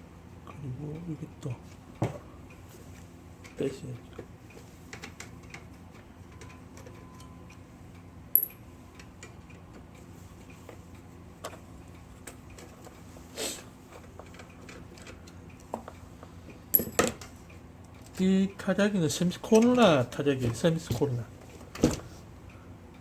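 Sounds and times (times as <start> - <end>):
low steady hum: 0.0 - 23.0
metal clicks and clinks: 8.4 - 8.6, 16.7 - 17.3
tools tapping on metal frame: 8.4 - 9.4, 16.7 - 17.3.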